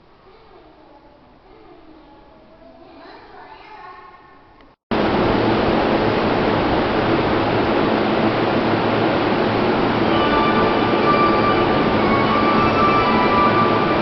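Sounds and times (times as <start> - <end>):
train rushing roar: 4.9 - 14.0.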